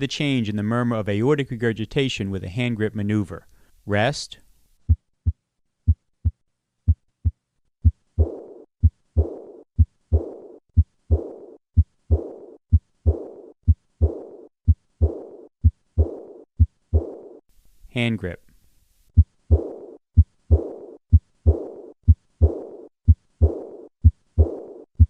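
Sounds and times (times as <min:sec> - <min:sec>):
heartbeat through stethoscope: 0:04.8 - 0:17.4, 0:19.2 - 0:25.0
high-pitched heart murmur: 0:04.9 - 0:17.4, 0:19.2 - 0:25.0.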